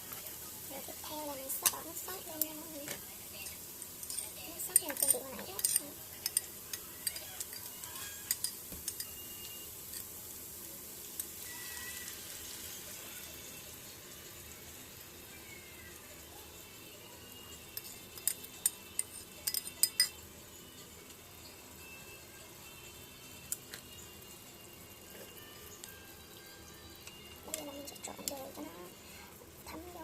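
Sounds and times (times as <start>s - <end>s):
chicken wings sizzling in a pan: 0.0s - 30.0s
kitchenware clinking: 1.6s - 10.1s, 17.7s - 20.2s.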